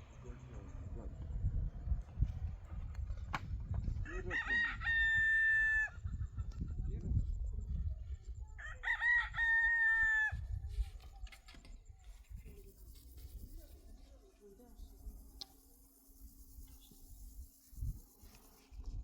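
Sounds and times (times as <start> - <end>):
rooster crowing: 4.0 - 6.0, 8.6 - 10.4.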